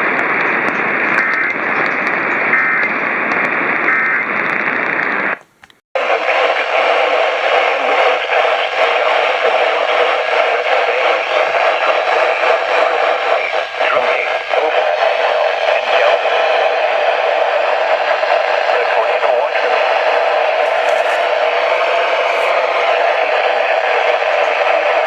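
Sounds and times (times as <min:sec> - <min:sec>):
heavy radio static: 0:06.0 - 0:25.0.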